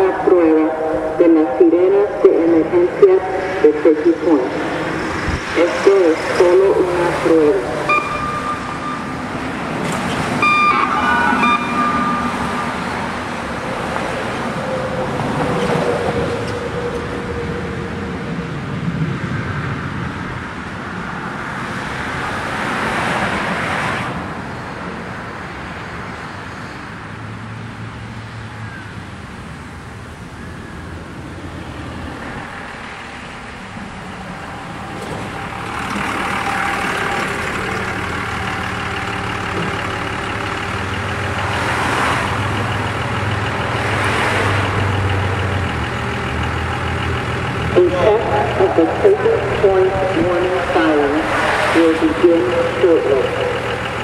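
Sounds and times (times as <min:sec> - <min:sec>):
vehicles passing: 0:00.0 - 0:54.0
brief tone: 0:07.8 - 0:13.3.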